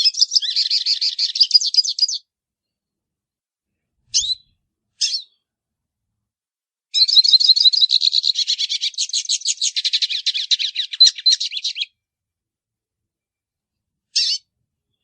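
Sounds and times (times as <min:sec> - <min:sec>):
bird twittering song: 0:00.0 - 0:02.2, 0:04.1 - 0:05.4, 0:06.9 - 0:12.0, 0:14.2 - 0:15.0.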